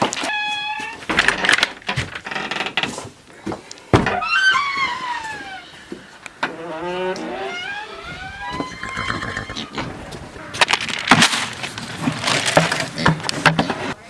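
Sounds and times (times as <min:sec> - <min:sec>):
horse whinnying: 0:07.1 - 0:10.1.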